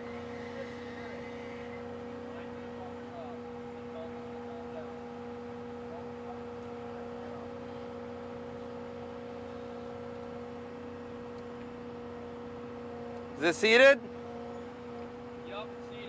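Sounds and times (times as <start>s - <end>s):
excavator engine and hydraulics hum: 0.0s - 16.0s.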